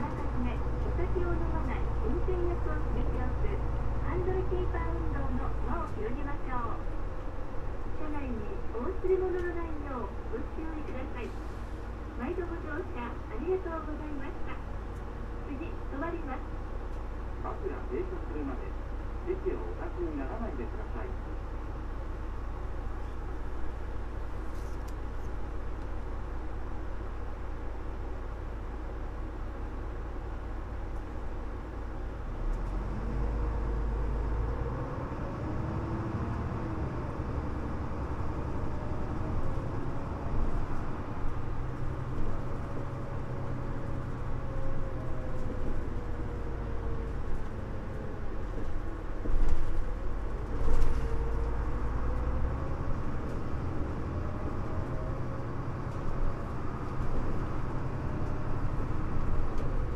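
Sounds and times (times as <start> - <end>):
bus diesel engine: 0.0 - 59.9
road rumble: 0.0 - 59.9
engine whine rising and falling: 32.2 - 59.9.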